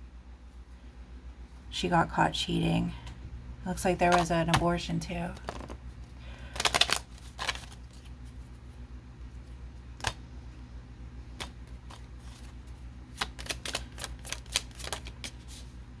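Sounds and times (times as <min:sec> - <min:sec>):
steady low hum: 0:00.0 - 0:16.0
cards snapping and tapping: 0:05.4 - 0:05.8, 0:06.5 - 0:08.0, 0:10.0 - 0:10.2, 0:11.3 - 0:15.4.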